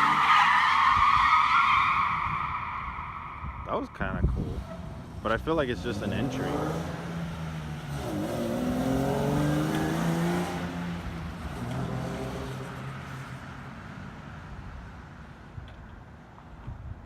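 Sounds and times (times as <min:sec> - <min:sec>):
car engine revving: 0:03.8 - 0:14.2.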